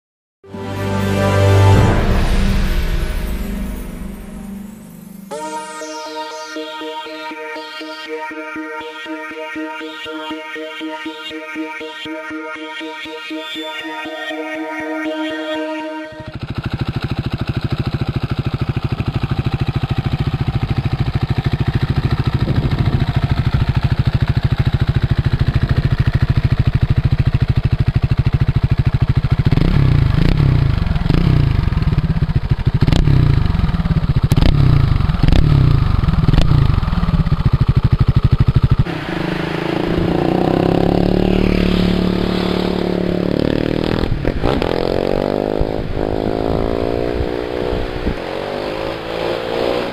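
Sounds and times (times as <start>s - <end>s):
motorcycle engine idling and revving: 16.2s - 49.9s.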